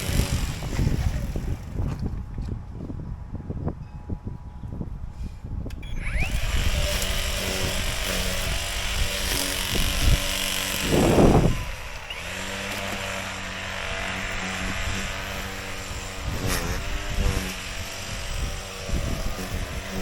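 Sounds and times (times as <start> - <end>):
small gas engine running: 0.0 - 2.1, 5.7 - 20.0
wind buffeting microphone: 0.0 - 20.0.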